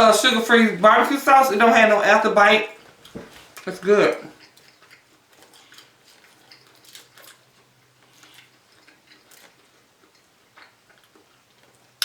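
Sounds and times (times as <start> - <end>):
person chewing close to microphone: 2.8 - 12.0.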